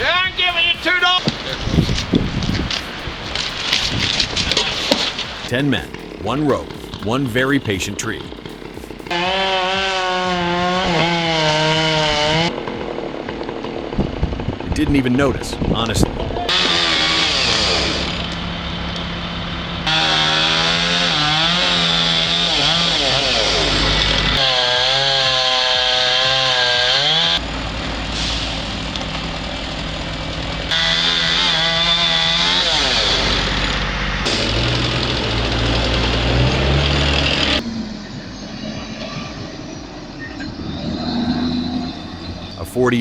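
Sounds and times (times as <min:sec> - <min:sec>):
chainsaws running and revving: 0:00.0 - 0:15.2, 0:16.5 - 0:38.4.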